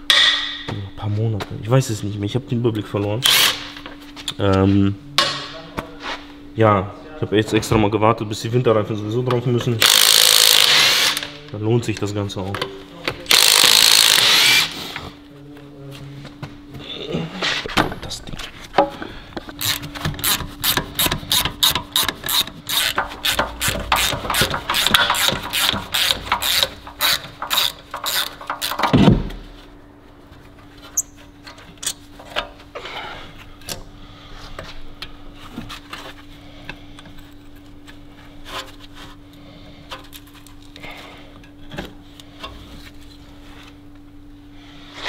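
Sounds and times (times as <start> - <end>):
steady low hum: 0.0 - 45.0
ratchet wrench clicking: 9.8 - 11.2, 13.3 - 14.7, 19.6 - 28.9.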